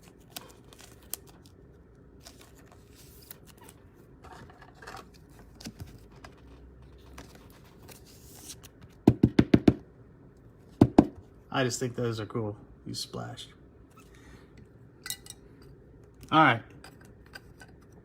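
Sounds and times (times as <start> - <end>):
trading cards rustling and clicking: 0.0 - 1.6, 2.2 - 9.0.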